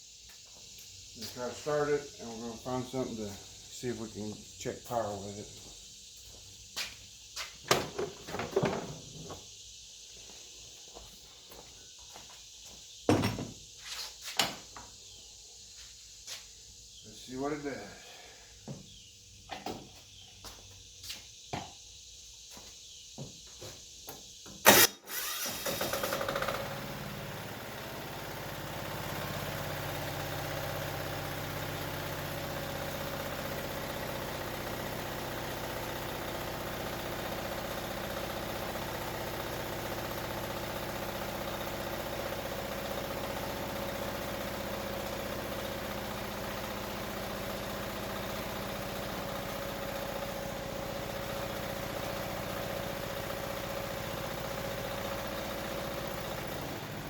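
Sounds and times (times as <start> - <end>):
electric starter click: 24.6 - 26.8
diesel generator engine running: 24.7 - 57.0.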